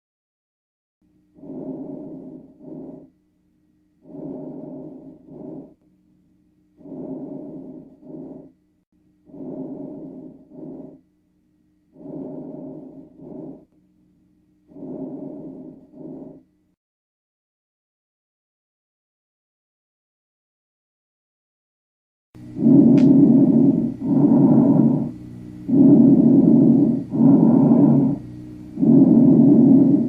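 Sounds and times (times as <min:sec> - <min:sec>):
faint steady hum: 0:01.0 - 0:16.8, 0:22.4 - 0:30.0
breathing through stethoscope: 0:01.4 - 0:03.1, 0:04.0 - 0:05.8, 0:06.8 - 0:08.6, 0:09.3 - 0:11.0, 0:12.0 - 0:13.7, 0:14.7 - 0:16.4, 0:22.6 - 0:30.0.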